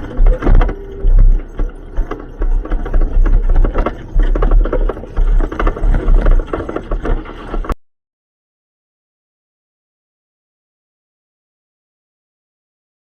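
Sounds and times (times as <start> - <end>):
knocks and rattles inside car: 0.0 - 7.8
rally car engine rumble: 0.0 - 7.8.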